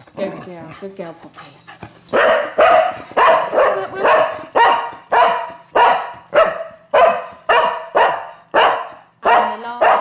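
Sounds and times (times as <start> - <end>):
dog barking: 2.1 - 10.0.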